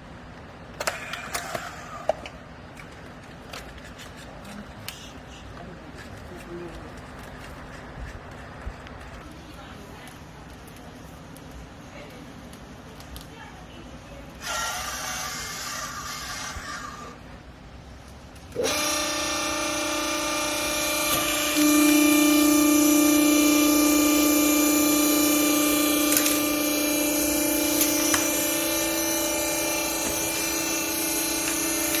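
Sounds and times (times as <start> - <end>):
hydraulic pump motor whine: 14.4 - 17.2, 18.5 - 32.0.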